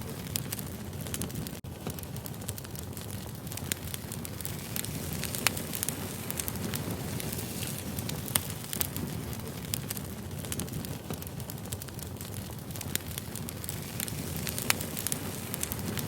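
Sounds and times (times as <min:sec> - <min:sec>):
fire crackles and pops: 0:00.0 - 0:16.0
wood fire rumble: 0:00.0 - 0:16.0.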